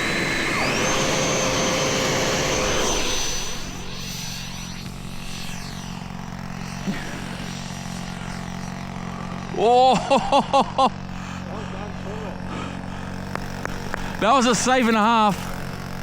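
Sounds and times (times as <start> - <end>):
electric ducted fan whining: 0.0 - 16.0.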